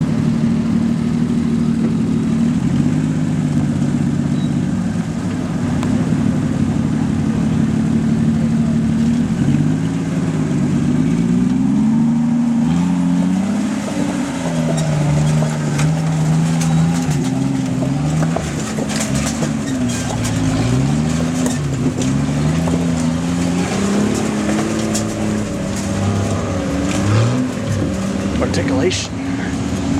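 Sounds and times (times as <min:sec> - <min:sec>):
off-road vehicle engine revving: 0:00.0 - 0:29.9
clicks and knocks: 0:13.6 - 0:28.4.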